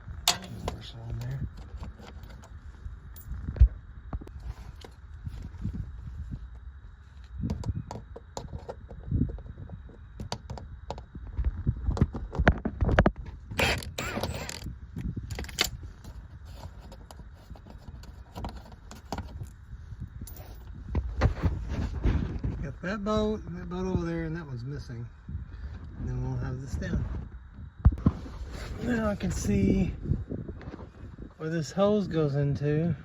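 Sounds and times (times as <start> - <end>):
metal tools clinking: 0.3 - 2.5.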